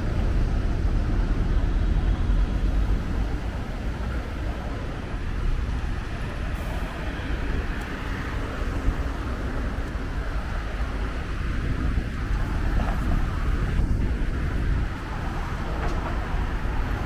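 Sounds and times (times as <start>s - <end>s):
road vehicles rumbling: 0.0s - 17.0s.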